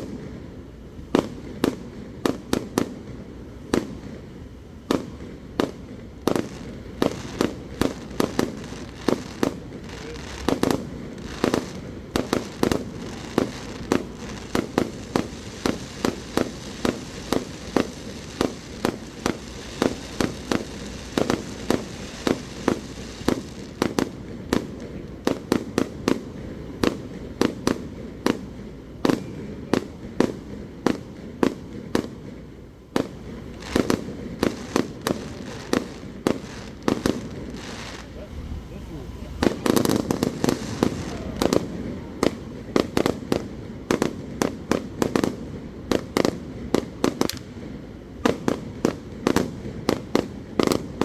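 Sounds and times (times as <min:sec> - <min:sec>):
fireworks bursting: 0:00.0 - 0:51.0
rumble and echo: 0:37.6 - 0:43.2.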